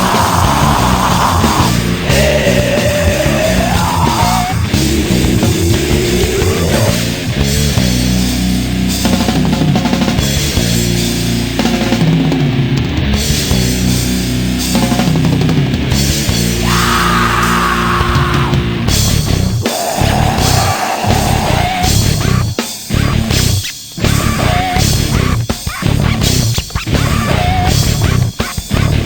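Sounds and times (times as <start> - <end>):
drum kit: 0.0 - 29.0
heavy distorted guitars: 0.0 - 29.0
sustained high guitar notes: 20.3 - 24.6.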